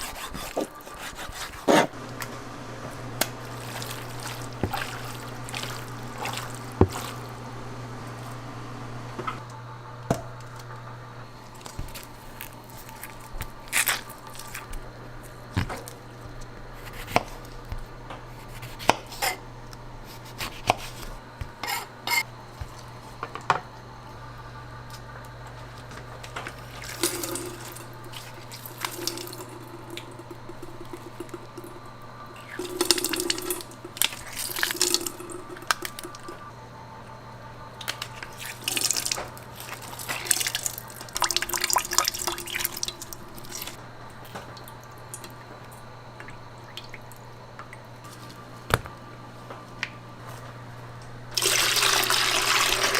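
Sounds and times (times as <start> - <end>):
steady low hum: 0.0 - 51.4
liquid splashing: 3.2 - 8.3.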